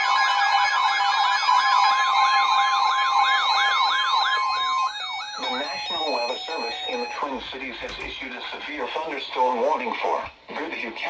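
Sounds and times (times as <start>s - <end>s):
steady alarm tone: 0.0s - 8.2s
yelp siren wailing: 0.0s - 8.2s.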